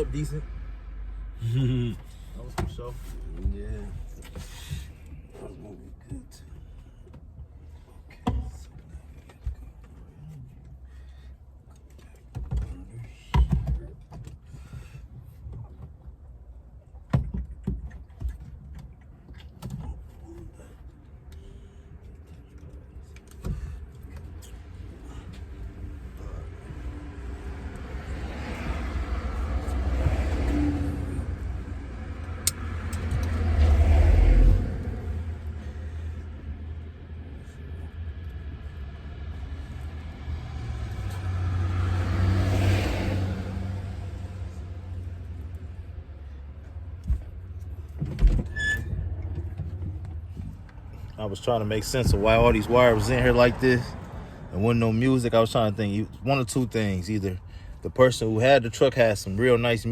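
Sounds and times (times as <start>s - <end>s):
vehicles passing with engine rumble: 0.0s - 59.9s
knocks and clunks: 47.0s - 51.0s.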